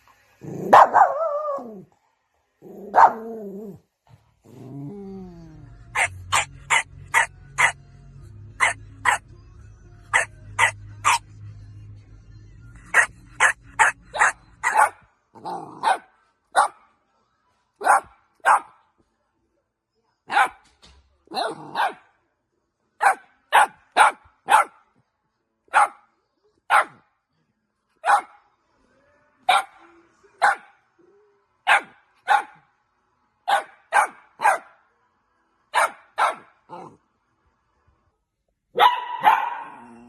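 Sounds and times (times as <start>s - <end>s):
dog barking: 0.5s - 1.8s, 2.8s - 3.5s, 5.9s - 7.8s, 8.6s - 9.2s, 10.1s - 11.2s, 12.8s - 15.1s, 15.7s - 16.9s, 17.8s - 18.8s, 20.3s - 20.6s, 21.3s - 22.2s, 23.0s - 24.9s, 25.7s - 26.1s, 26.7s - 27.0s, 28.0s - 28.4s, 29.5s - 30.8s, 31.6s - 32.7s, 33.5s - 34.8s, 35.7s - 37.0s, 38.7s - 40.0s.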